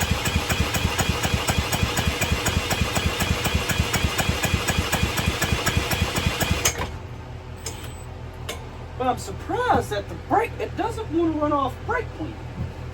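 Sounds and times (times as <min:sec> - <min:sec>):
small engine running: 0:00.0 - 0:06.9.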